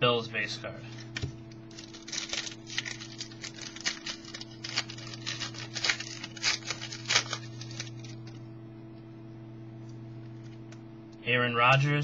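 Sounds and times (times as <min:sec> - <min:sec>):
steady low hum: 0:00.0 - 0:12.0
trading cards rustling and scraping: 0:00.8 - 0:08.4.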